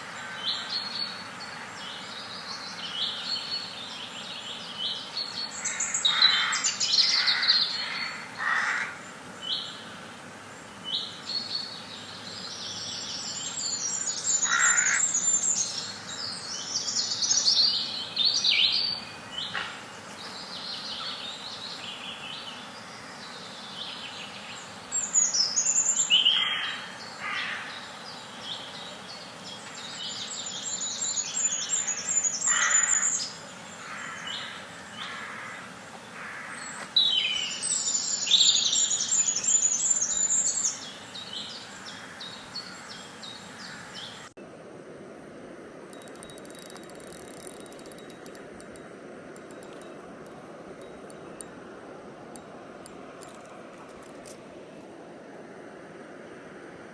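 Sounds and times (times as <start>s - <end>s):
birds chirping and trilling: 0.0s - 9.9s, 10.7s - 27.9s, 28.5s - 35.5s, 45.9s - 51.6s, 52.3s - 54.4s
loud bird calls: 5.0s - 9.8s, 13.2s - 23.7s, 30.2s - 40.7s.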